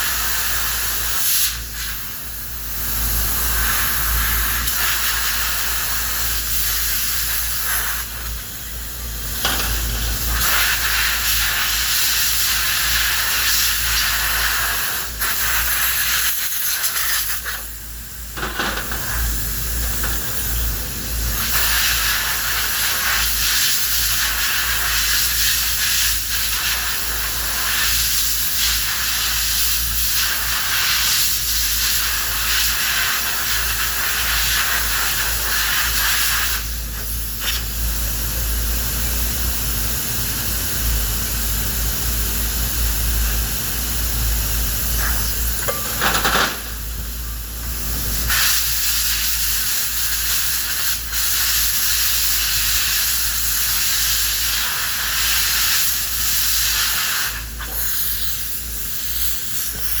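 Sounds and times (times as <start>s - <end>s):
loud steady hiss: 0.0s - 60.0s.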